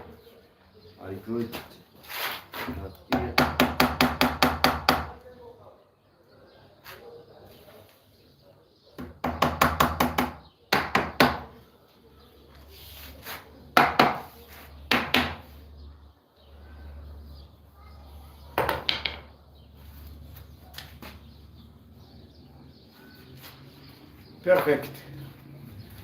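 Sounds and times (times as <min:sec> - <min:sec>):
rapid hammering on wood: 0:03.1 - 0:05.2, 0:09.0 - 0:11.6, 0:13.8 - 0:14.3, 0:14.9 - 0:15.4.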